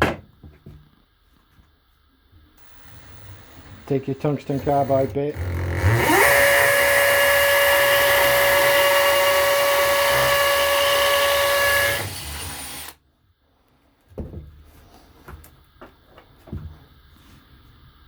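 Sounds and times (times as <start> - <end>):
power drill whining: 2.6 - 13.0.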